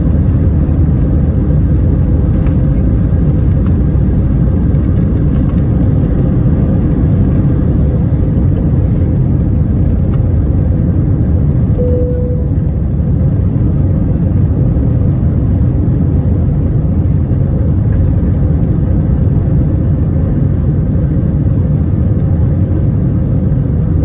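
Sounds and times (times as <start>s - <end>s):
jet engines rumbling: 0.0s - 24.0s
faint steady hum: 11.7s - 13.1s.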